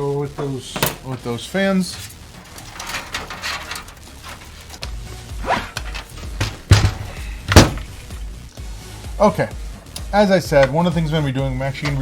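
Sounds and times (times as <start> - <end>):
computer parts clicking and rattling: 0.4 - 4.8.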